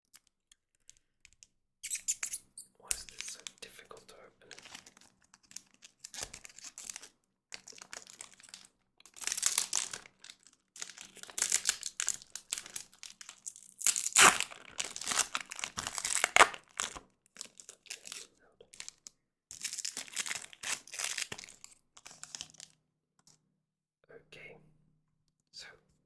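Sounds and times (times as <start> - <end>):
foil wrapper crinkling and tearing: 4.5 - 22.8.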